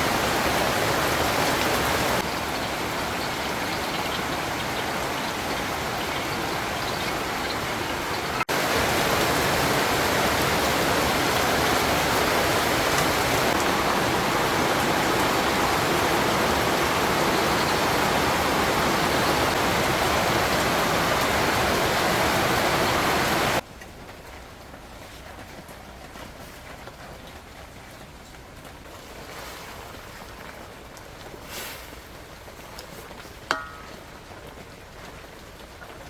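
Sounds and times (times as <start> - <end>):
heavy rain falling: 0.0 - 36.0.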